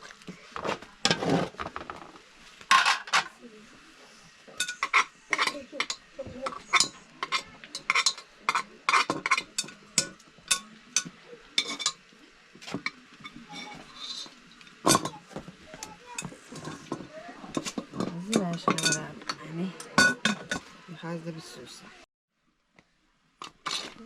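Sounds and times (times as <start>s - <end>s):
utensils and metal dishes clinking: 2.7s - 3.4s, 4.5s - 20.9s.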